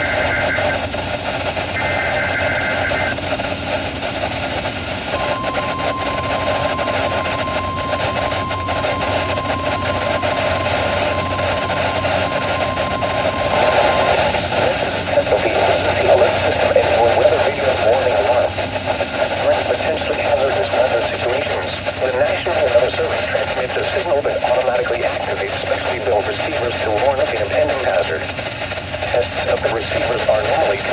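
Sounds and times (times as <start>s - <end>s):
radio hiss: 0.0s - 30.9s
screechy digital data bursts: 1.8s - 3.2s
steady alert tone: 5.2s - 17.4s.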